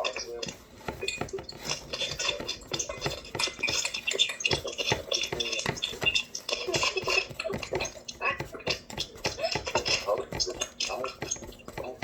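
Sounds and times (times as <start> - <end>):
utensil scraping and clinking a bowl: 0.0 - 12.0.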